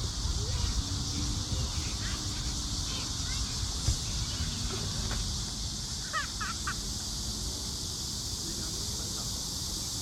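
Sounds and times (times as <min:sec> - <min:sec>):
wind rumble on microphone: 0:00.0 - 0:05.0
constant high hiss: 0:00.0 - 0:10.0.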